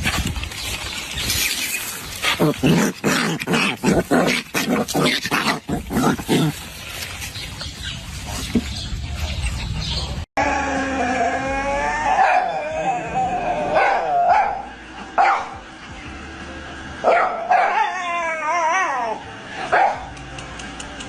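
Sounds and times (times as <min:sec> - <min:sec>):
dog whine-howling: 0:10.4 - 0:14.6, 0:17.6 - 0:19.2.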